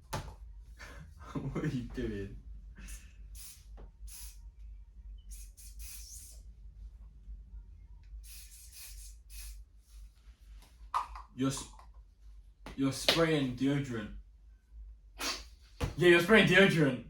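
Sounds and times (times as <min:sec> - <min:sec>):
aerosol can spraying: 0:03.4 - 0:04.4, 0:05.3 - 0:06.4, 0:08.2 - 0:09.6.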